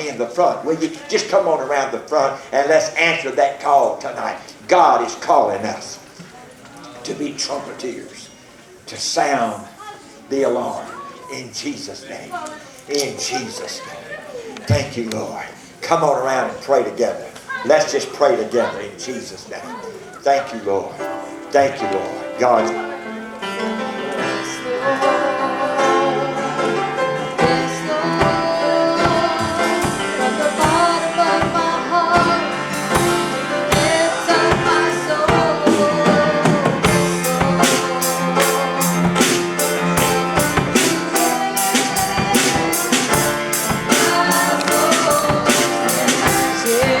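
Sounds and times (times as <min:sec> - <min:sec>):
keyboard: 0:20.8 - 0:47.0
drum kit playing: 0:27.3 - 0:47.0.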